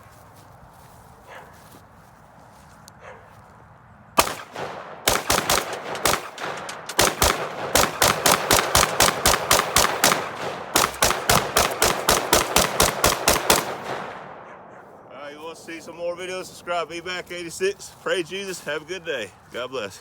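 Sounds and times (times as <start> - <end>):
rifle gunshots: 4.2 - 16.9.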